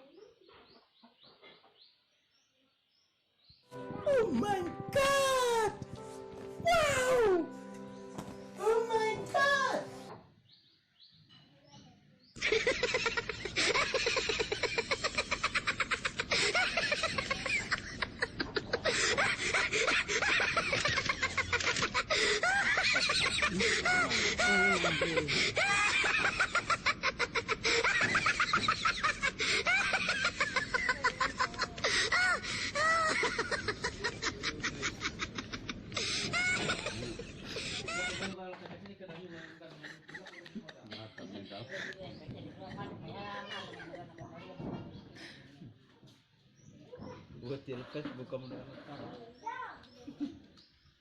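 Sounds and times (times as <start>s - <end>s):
fast laughter with high squeals: 12.4s - 38.4s.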